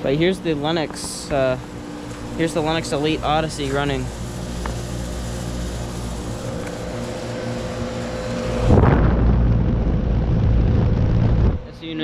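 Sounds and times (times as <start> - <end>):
heat pump hum: 0.0 - 12.0
rush of air: 8.6 - 11.7.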